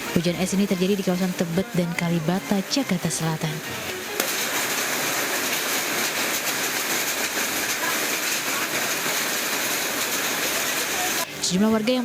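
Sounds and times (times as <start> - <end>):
heavy rain hiss: 2.9 - 11.3
hailstones clicking: 3.9 - 11.2.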